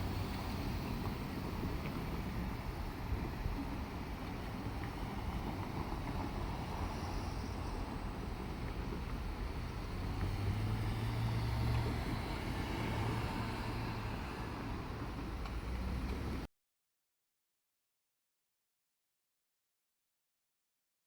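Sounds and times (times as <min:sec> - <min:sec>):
diesel railcar engine running: 0:00.0 - 0:16.5
outdoor noise: 0:00.0 - 0:16.5.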